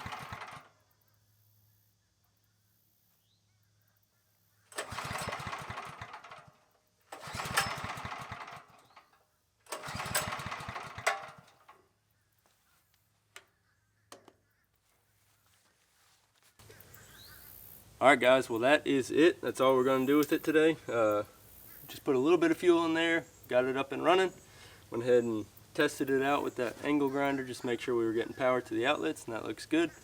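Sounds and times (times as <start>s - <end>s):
generator engine sputtering: 0.0s - 0.8s, 4.7s - 11.8s.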